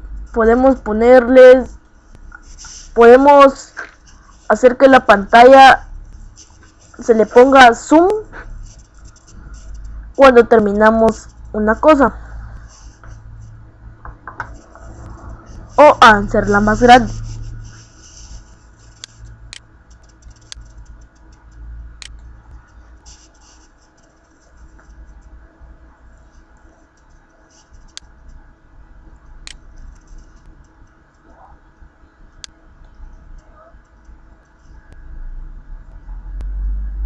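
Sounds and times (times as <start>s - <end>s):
faint low hum: 0.0s - 37.0s
computer mouse clicks: 17.4s - 25.3s.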